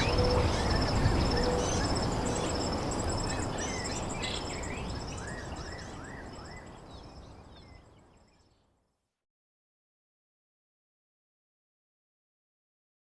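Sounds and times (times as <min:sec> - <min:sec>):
insects trilling: 0:00.0 - 0:06.0
bird chirping: 0:00.0 - 0:08.6.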